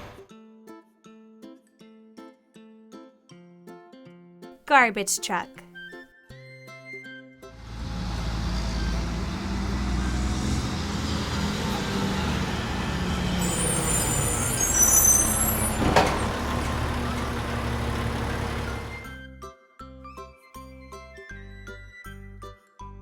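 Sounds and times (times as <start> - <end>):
garbage truck engine running: 7.6 - 19.2
high squeal: 8.2 - 19.1.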